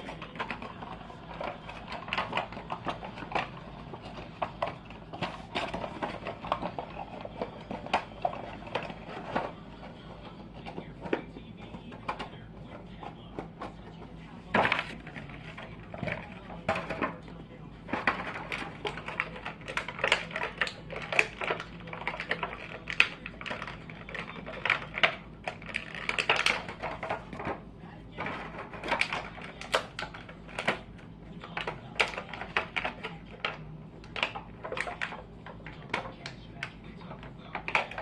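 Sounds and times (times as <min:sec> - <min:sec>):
packaging clicks and crinkles: 0:17.8 - 0:27.6.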